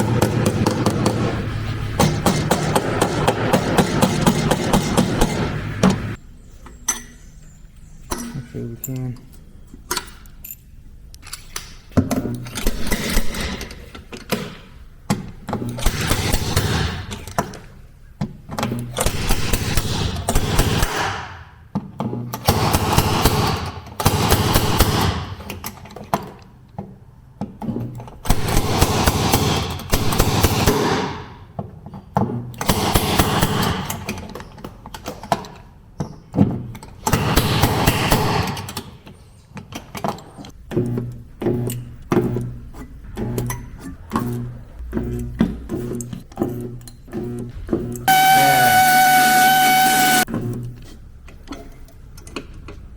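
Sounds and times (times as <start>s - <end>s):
power tool hammering sheet metal: 0.0s - 6.2s, 15.8s - 17.2s, 19.0s - 21.5s, 22.4s - 25.5s, 28.3s - 31.4s, 32.6s - 34.1s, 37.0s - 38.8s, 48.1s - 50.3s.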